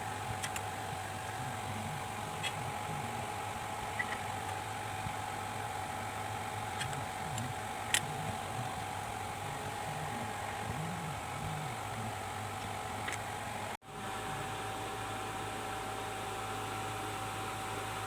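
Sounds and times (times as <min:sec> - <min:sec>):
mechanical hum: 0:00.0 - 0:18.0
small clicks: 0:00.4 - 0:00.7.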